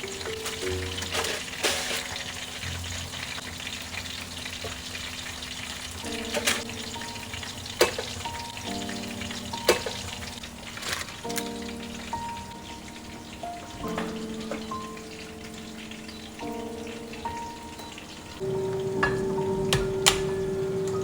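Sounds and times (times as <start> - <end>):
food sizzling in oil: 0.0 - 20.0
utensil clinking against pan: 7.8 - 8.6.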